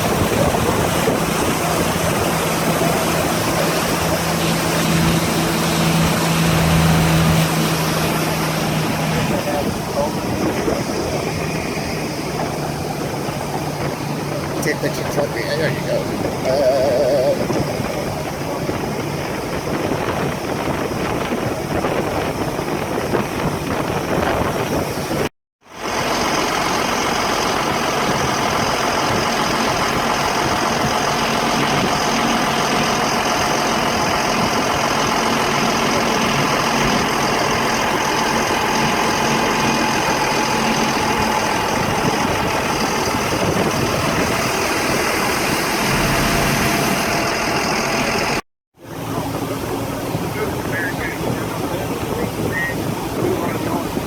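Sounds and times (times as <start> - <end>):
loud rushing noise: 0.0 - 14.9, 38.4 - 48.4
vehicle engine running: 0.0 - 24.9, 25.7 - 54.0.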